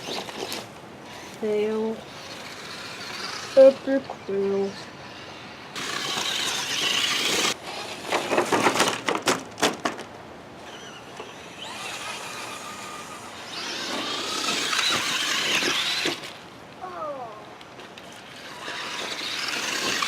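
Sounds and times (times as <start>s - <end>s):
toy truck scrabbling: 0.0s - 1.4s, 2.0s - 16.4s, 17.9s - 20.0s
electric motor whine: 0.0s - 8.4s, 10.6s - 16.3s, 18.3s - 20.0s.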